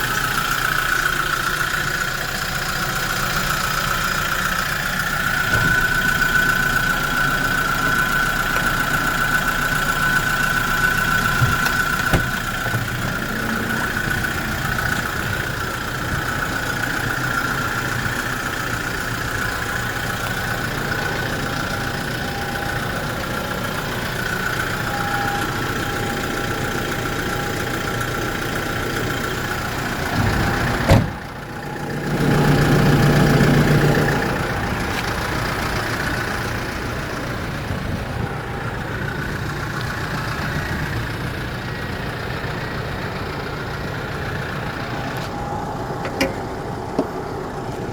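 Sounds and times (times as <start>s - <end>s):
diesel engine idling: 0.0s - 47.9s
deep hum: 2.9s - 24.8s.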